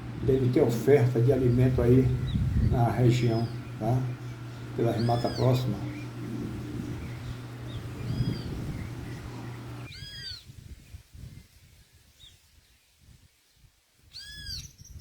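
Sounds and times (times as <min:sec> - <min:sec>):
steady low hum: 0:00.0 - 0:09.9.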